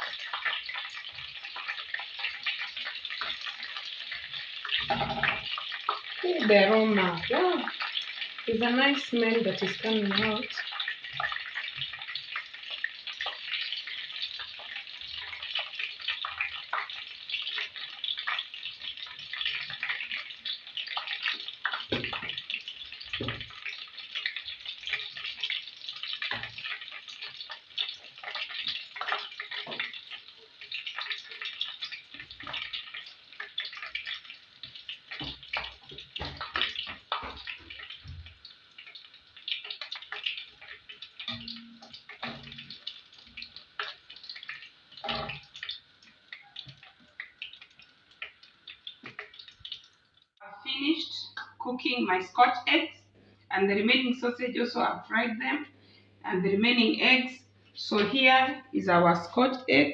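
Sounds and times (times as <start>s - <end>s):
oil popping: 0.0s - 6.1s, 10.8s - 50.3s
food deep-frying in hot oil: 0.0s - 59.9s.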